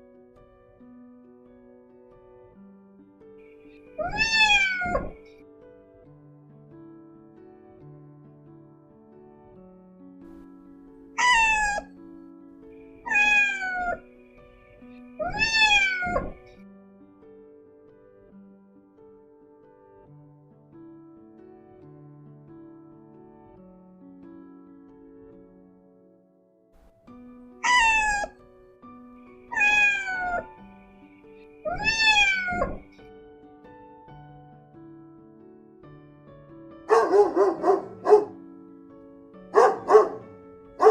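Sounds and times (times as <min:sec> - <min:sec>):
soft plucked background music: 0:02.0 - 0:08.2, 0:09.2 - 0:18.0, 0:26.8 - 0:34.8, 0:36.8 - 0:40.9
cat meowing: 0:04.0 - 0:05.2, 0:11.2 - 0:11.9, 0:13.1 - 0:14.0, 0:15.2 - 0:16.5, 0:27.6 - 0:28.4, 0:29.5 - 0:30.6, 0:31.7 - 0:32.9, 0:36.9 - 0:38.3, 0:39.6 - 0:40.9.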